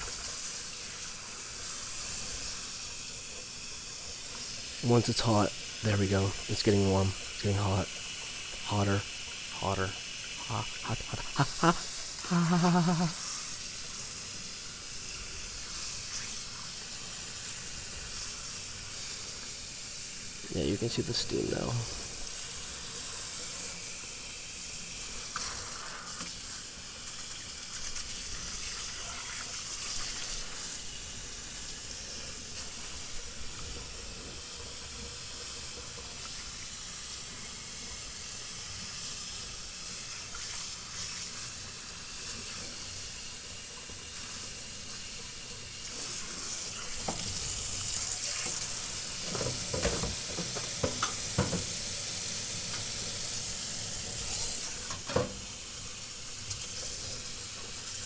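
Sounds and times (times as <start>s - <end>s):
tap water running: 0.0s - 58.0s
knocks on sink: 49.3s - 51.7s.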